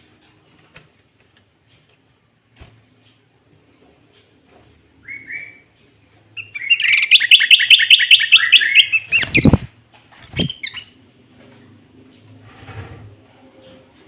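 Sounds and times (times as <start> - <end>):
bird singing repeated notes: 5.0 - 9.7, 10.3 - 11.0.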